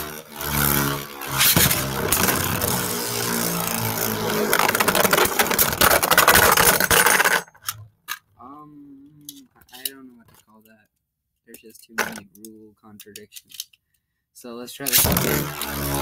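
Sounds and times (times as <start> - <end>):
spinning tops whirring: 0.0 - 7.5, 14.9 - 16.0
spinning tops clattering: 1.2 - 7.6.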